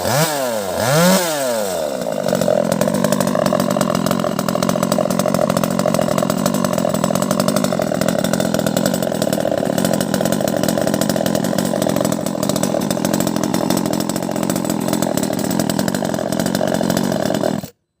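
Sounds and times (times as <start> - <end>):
chainsaw engine running: 0.0 - 17.8.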